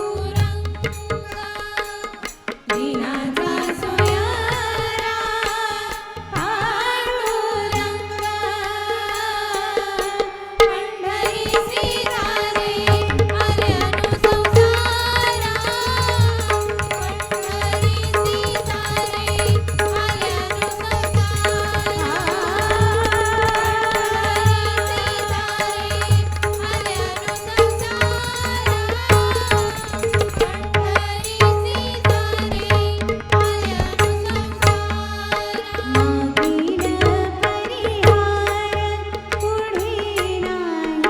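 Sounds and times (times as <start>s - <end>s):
person singing devotional song: 0.0s - 41.0s
hand drums playing rhythm: 11.8s - 40.5s.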